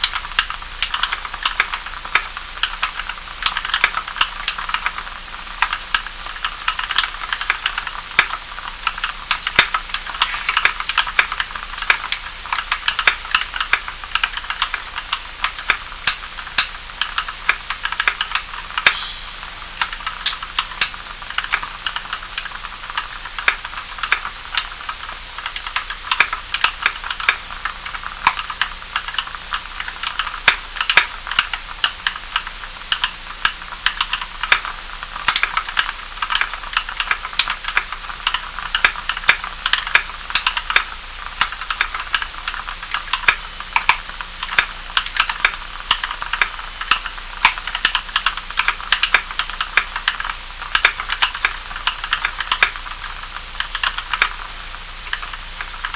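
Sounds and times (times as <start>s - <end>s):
faint steady hiss: 0.0s - 33.0s.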